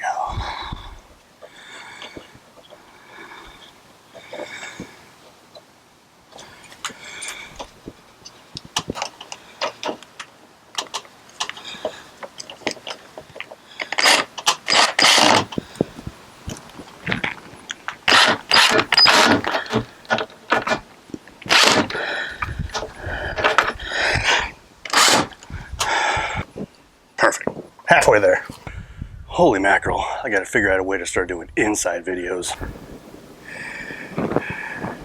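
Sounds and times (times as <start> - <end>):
cordless driver driving screw: 13.8 - 15.6, 18.1 - 20.8, 21.4 - 23.7, 24.9 - 25.4.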